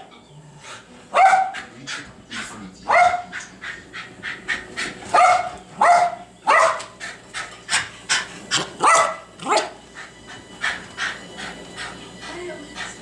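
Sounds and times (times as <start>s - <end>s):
dog yapping: 1.1s - 1.7s, 2.9s - 7.0s, 8.5s - 9.8s
dog barking: 1.1s - 2.0s, 2.9s - 3.5s, 4.5s - 7.0s, 8.8s - 9.8s.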